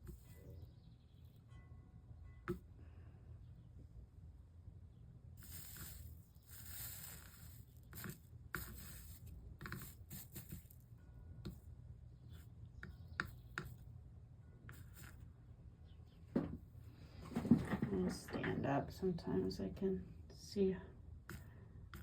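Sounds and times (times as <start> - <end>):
soldering iron scratchy hisses: 5.4 - 10.6.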